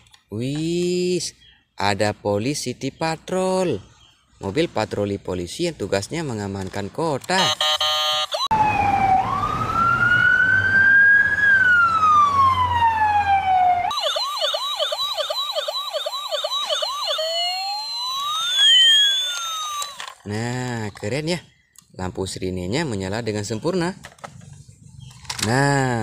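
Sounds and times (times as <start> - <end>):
toy police car electronic siren: 7.4 - 20.2.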